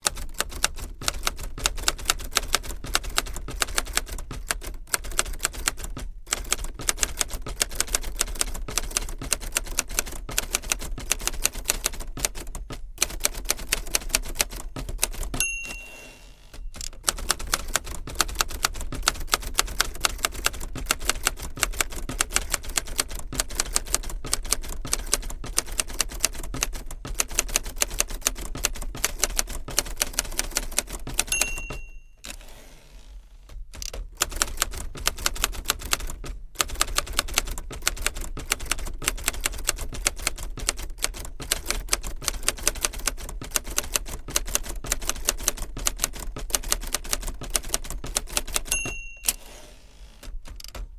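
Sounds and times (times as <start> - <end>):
typewriter keys striking: 0.0 - 32.4, 33.5 - 50.9
typewriter bell ding: 15.4 - 17.0, 31.2 - 32.4, 48.6 - 49.8.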